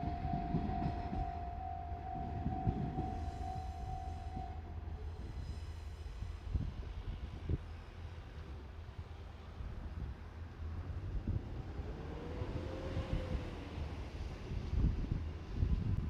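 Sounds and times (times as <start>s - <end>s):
level-crossing alarm pulsing: 0.0s - 5.3s
diesel railcar rumble: 0.0s - 16.0s.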